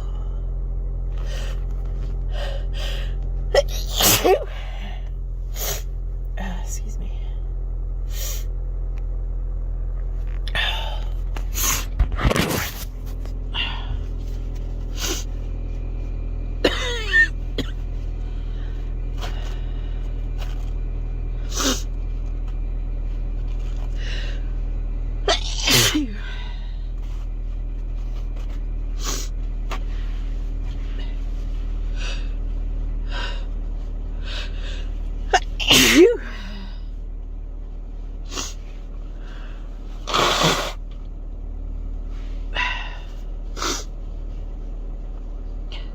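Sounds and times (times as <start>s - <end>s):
low car hum: 0.0s - 45.9s
person sneezing: 3.5s - 5.9s, 15.0s - 15.3s, 21.5s - 21.9s, 25.3s - 26.4s, 35.3s - 36.6s, 38.3s - 38.6s, 40.1s - 40.8s, 43.6s - 43.9s.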